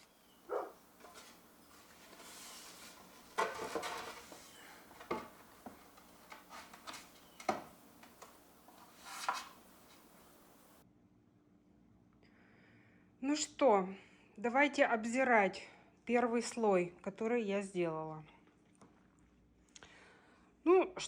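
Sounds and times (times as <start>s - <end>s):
rubbing hiss: 0.0s - 3.4s
wood knocking on wood: 3.1s - 10.6s.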